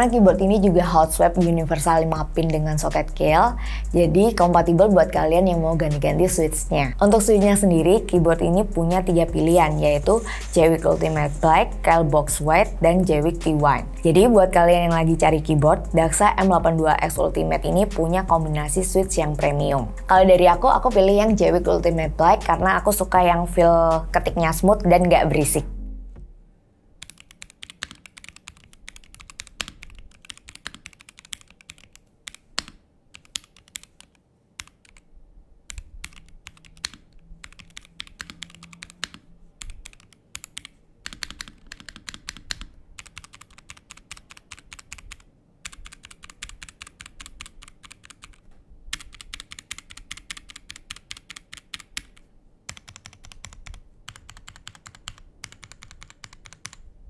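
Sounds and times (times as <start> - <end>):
mechanical keyboard typing: 27.0 - 35.1, 35.7 - 56.9.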